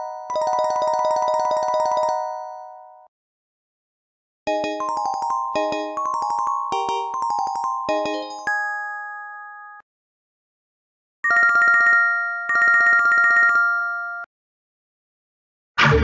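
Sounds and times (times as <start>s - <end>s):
ringtone chord: 4.5s - 9.8s.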